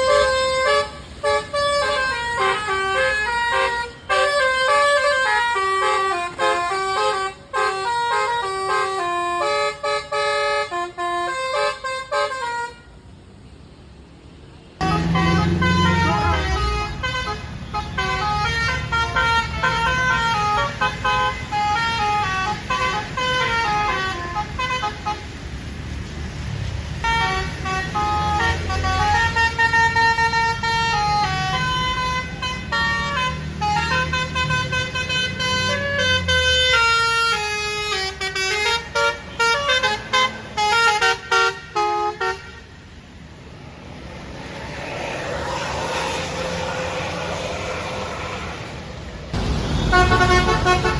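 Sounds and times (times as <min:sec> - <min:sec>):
musical bus air horn melody: 0:00.0 - 0:13.0, 0:14.8 - 0:25.4, 0:26.9 - 0:43.0, 0:49.6 - 0:50.9
bus engine humming: 0:00.0 - 0:50.9
rush of noise: 0:43.2 - 0:49.9.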